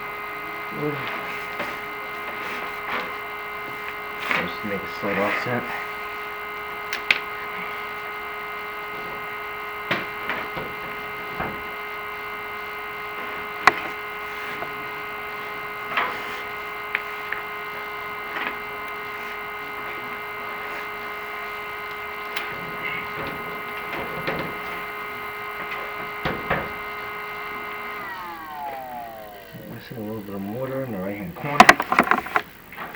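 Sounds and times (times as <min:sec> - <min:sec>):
steady electric whine: 0:00.0 - 0:32.9
camera head knocking in flue: 0:31.5 - 0:32.5.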